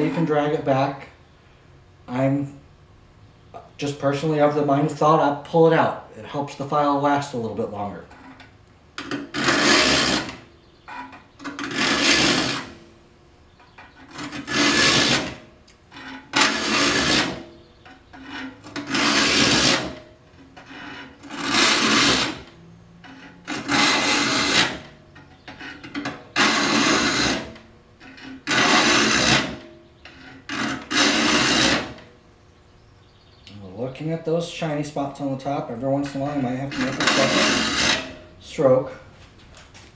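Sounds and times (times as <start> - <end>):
file rasping on saw teeth: 9.0 - 10.4, 11.5 - 12.8, 14.0 - 20.0, 20.6 - 22.5, 23.1 - 32.1, 36.7 - 38.3.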